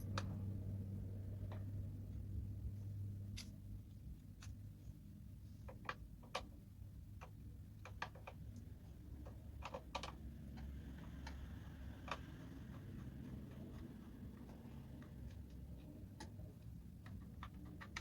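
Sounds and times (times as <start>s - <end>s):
low steady hum: 0.0s - 7.8s.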